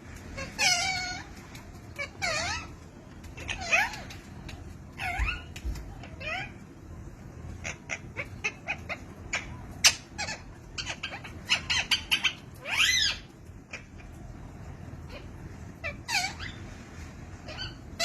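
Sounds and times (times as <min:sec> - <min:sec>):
parrot chirping and clicking: 0:00.0 - 0:16.6
parrot warbling call: 0:00.4 - 0:01.4, 0:02.0 - 0:02.8, 0:15.1 - 0:16.6.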